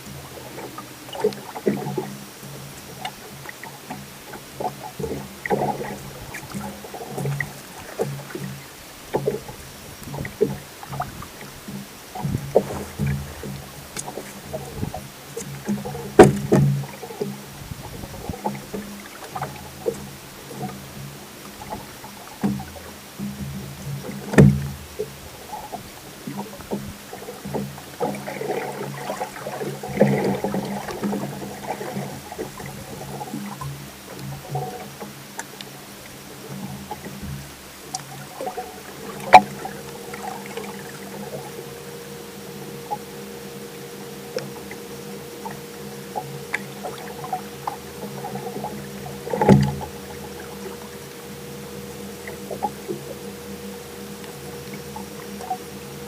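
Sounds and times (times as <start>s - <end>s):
steady low hum: 0.0s - 56.0s
water lapping against boat hull: 0.0s - 56.0s
knocking on boat: 10.1s - 21.1s, 22.4s - 25.0s, 44.4s - 50.8s.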